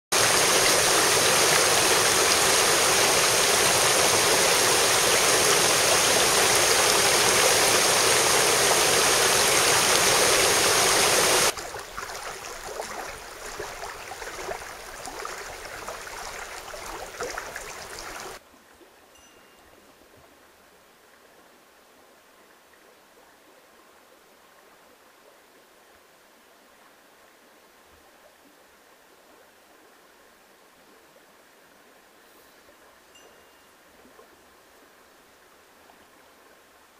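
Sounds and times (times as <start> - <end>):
mountain stream rushing: 0.1 - 18.4
water gurgling: 0.1 - 18.4.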